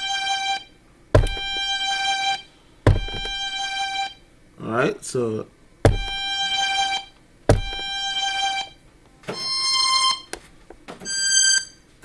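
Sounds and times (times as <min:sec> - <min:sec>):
sharp thump: 0:01.2 - 0:01.7, 0:02.9 - 0:03.4, 0:05.8 - 0:06.2, 0:07.5 - 0:07.9.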